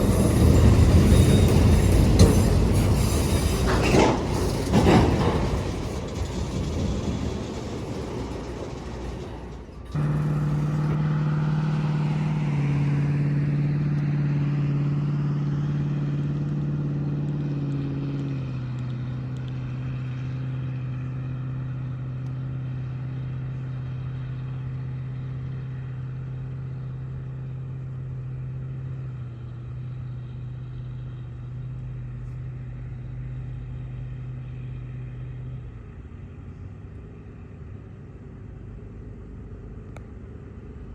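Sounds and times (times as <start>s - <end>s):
locomotive horn drone: 9.9s - 13.1s.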